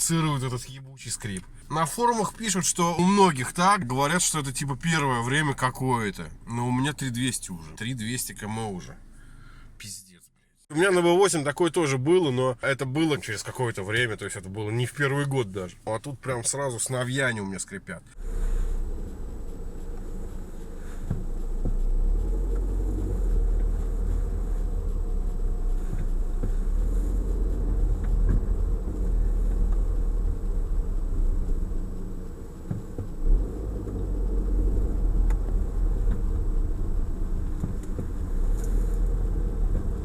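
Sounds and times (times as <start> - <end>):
car cabin rumble: 13.0 - 40.0.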